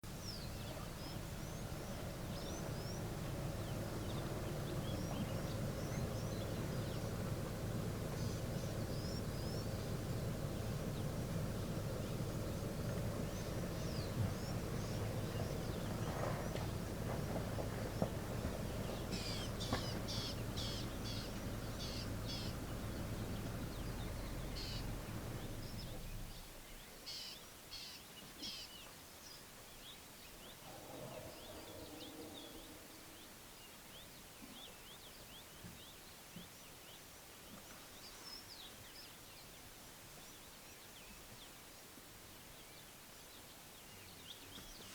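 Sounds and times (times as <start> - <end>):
steady low hum: 0.0 - 26.5, 30.6 - 33.4
birds chirping and calling: 0.2 - 26.4, 30.9 - 33.3.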